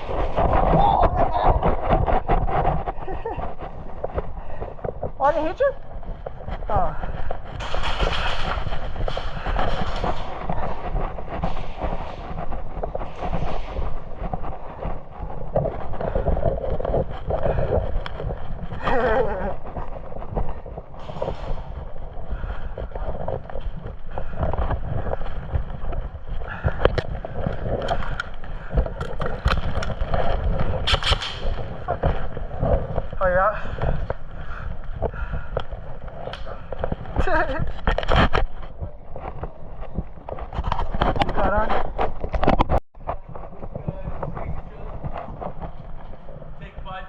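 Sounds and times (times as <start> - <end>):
footsteps: 0.0 - 47.0
rustling: 0.0 - 47.0
wind rumbling on microphone: 0.0 - 47.0
sharp clicks and knocks: 20.2 - 33.2.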